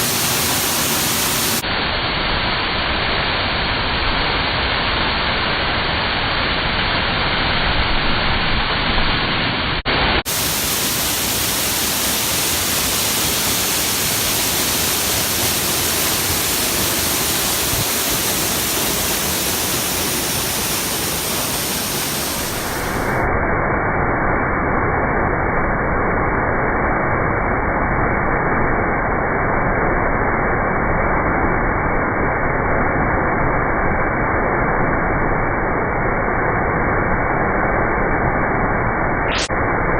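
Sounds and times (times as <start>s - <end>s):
waterfall rushing: 0.0s - 1.6s, 10.0s - 23.3s.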